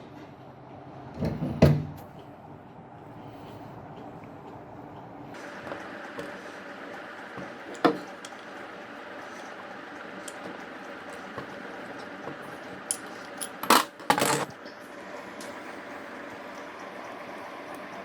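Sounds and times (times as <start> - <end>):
meat grinder humming: 5.1 - 13.6.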